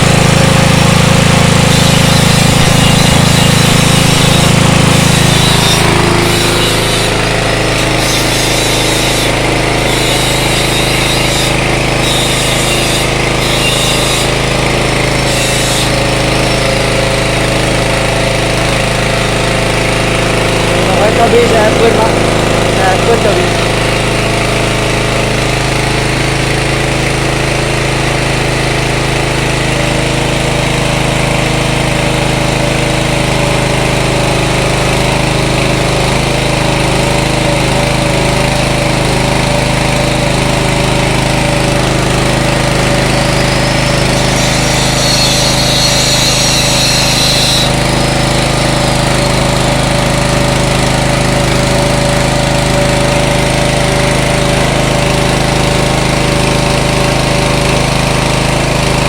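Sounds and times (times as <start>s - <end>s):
petrol engine running: 0.0s - 59.0s
high-pitched rising and falling sound: 1.7s - 7.2s.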